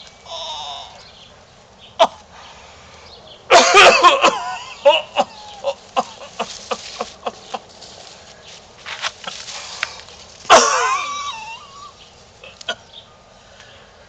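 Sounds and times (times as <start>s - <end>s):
person coughing: 3.5s - 5.4s, 10.5s - 11.1s.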